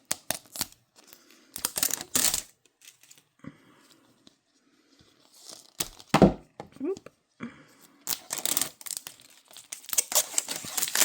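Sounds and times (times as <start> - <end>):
plastic crinkling and clicking: 8.0 - 11.0.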